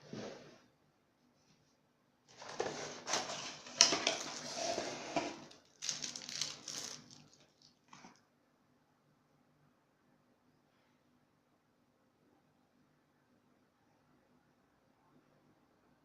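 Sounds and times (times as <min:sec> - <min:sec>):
rustling handling noise: 0:02.3 - 0:08.2.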